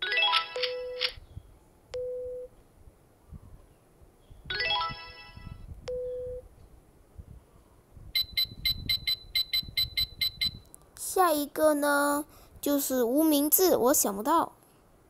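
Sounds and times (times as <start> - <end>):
short beep: 8.2 - 10.6.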